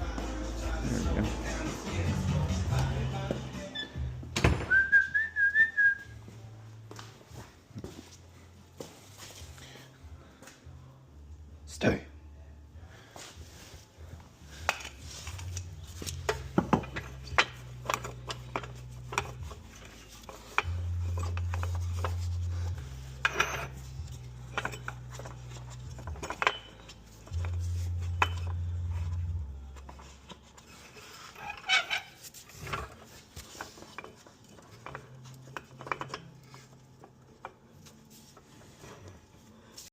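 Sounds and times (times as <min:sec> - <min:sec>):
metal tools clinking: 0:14.6 - 0:28.7.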